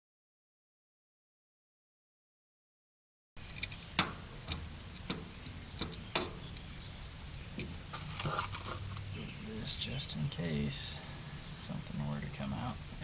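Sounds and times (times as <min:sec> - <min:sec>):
sharp clicks and light taps: 0:03.5 - 0:07.7.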